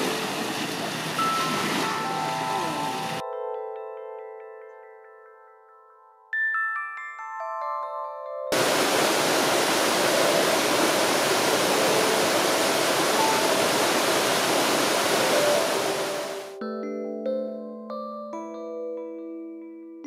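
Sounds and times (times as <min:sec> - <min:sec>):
waterfall rushing: 0:00.0 - 0:03.2, 0:08.6 - 0:16.6
glockenspiel-like music notes: 0:01.2 - 0:08.6, 0:16.5 - 0:20.0.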